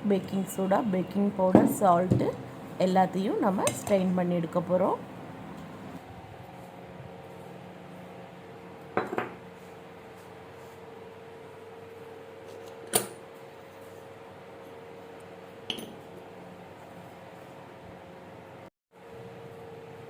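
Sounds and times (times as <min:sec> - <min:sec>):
faint hum: 0:00.0 - 0:06.0.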